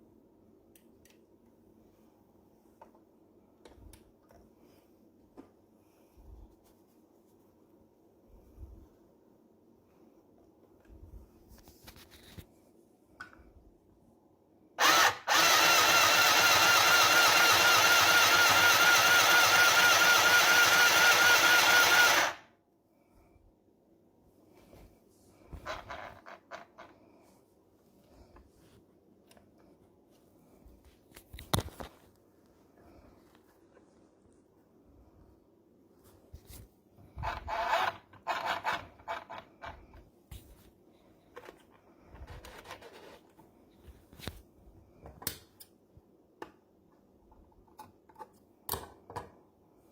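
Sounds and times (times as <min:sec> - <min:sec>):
rustles of handling: 0:11.1 - 0:12.8.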